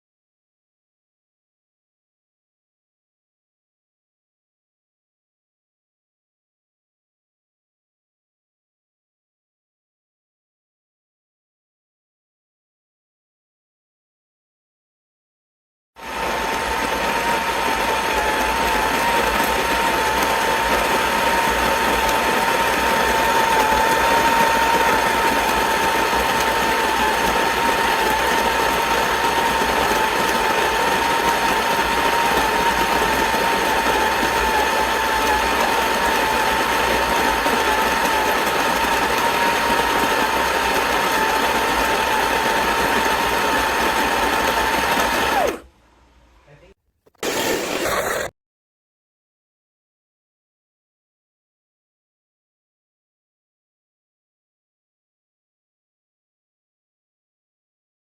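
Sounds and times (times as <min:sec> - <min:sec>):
electric coffee grinder whining: 0:16.0 - 0:45.7, 0:47.1 - 0:48.3.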